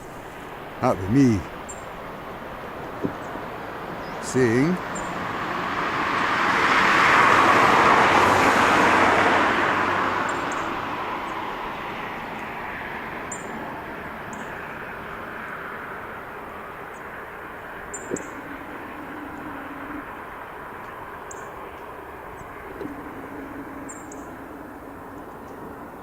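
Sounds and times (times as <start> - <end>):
road vehicle passing by: 0.0 - 26.0.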